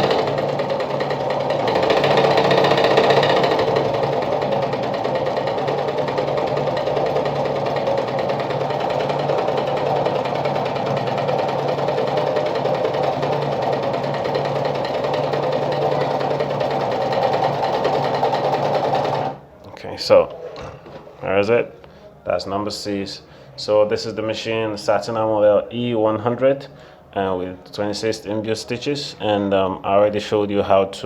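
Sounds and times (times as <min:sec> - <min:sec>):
sewing machine running: 0:00.0 - 0:19.4.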